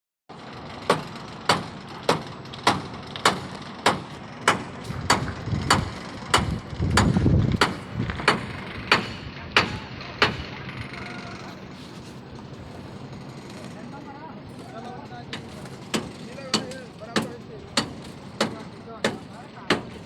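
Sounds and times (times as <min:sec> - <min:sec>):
hammer striking metal: 0:00.9 - 0:10.6, 0:15.3 - 0:20.0.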